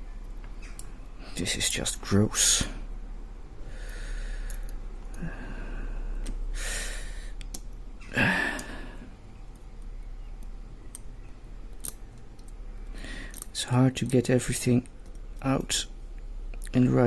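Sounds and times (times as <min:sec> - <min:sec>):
small clicks of padlock parts: 0:00.2 - 0:01.0, 0:03.9 - 0:05.2, 0:07.4 - 0:07.8, 0:09.5 - 0:12.6, 0:13.2 - 0:15.6
man breathing and sighing: 0:03.6 - 0:07.4, 0:08.1 - 0:09.3, 0:12.9 - 0:13.5.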